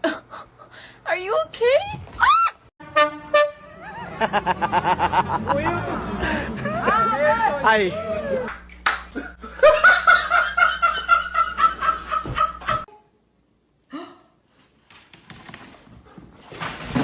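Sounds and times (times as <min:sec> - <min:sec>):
person laughing: 0:04.0 - 0:07.2.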